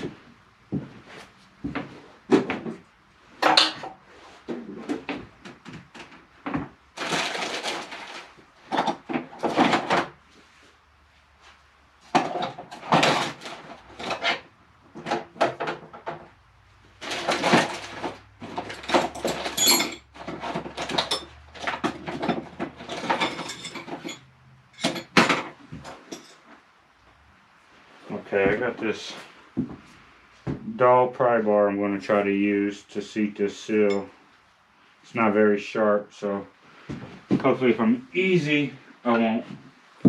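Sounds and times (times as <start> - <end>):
metal tools clinking: 17.1 - 26.4, 33.8 - 34.1.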